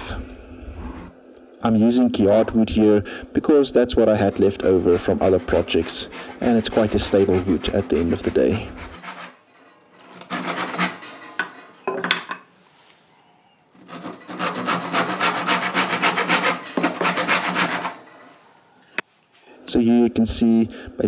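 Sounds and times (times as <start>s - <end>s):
hand tool rasping over wood: 3.8s - 9.4s, 10.0s - 11.0s, 13.8s - 18.0s.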